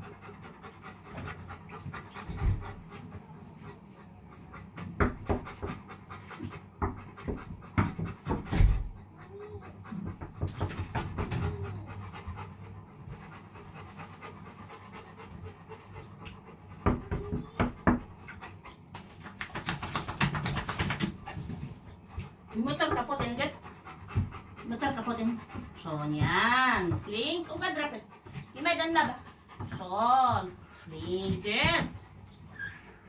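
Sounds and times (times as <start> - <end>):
dog panting: 0.0 - 33.0
knocks and rustles: 4.7 - 9.1, 9.9 - 11.7, 16.8 - 24.4.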